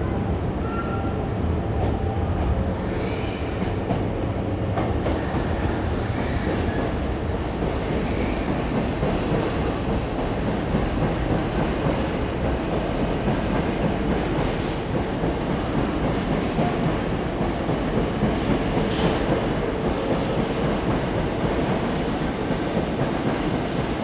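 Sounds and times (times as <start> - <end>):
electric train running rumble: 0.0 - 24.0.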